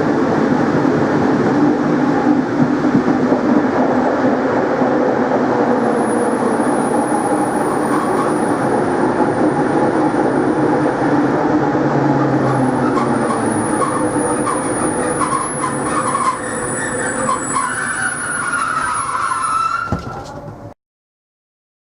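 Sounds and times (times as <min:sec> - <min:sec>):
train rumbling on rails: 0:00.0 - 0:20.8
wheels and brakes squealing: 0:05.7 - 0:10.9, 0:12.0 - 0:20.7
short squeaks: 0:12.8 - 0:20.7.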